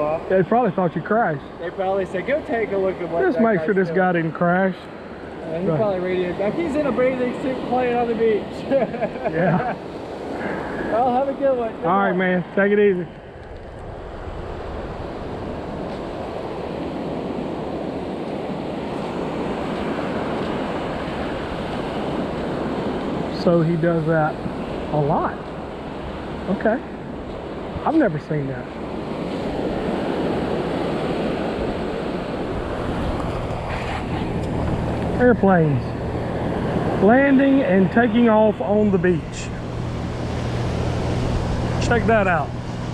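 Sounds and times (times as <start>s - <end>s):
ocean surf washing onto beach: 0.0s - 42.9s
wind on microphone: 13.1s - 23.4s, 28.6s - 42.9s
steady low hum: 32.2s - 42.9s.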